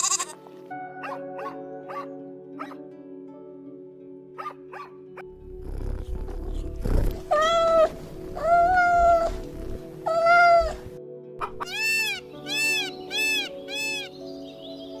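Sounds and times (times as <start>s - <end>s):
cat meowing: 0.0s - 0.4s, 7.3s - 10.8s, 11.6s - 14.1s
background music: 0.0s - 15.0s.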